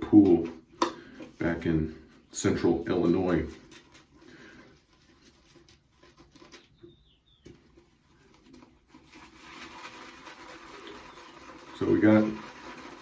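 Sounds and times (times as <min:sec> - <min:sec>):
shaving brush swishing: 0:09.2 - 0:13.0.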